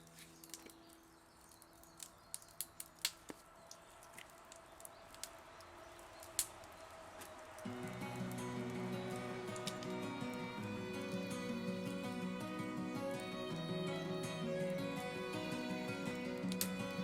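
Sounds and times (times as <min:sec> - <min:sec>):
campfire crackling: 0:00.0 - 0:17.0
sharp pops of fire: 0:16.5 - 0:17.0.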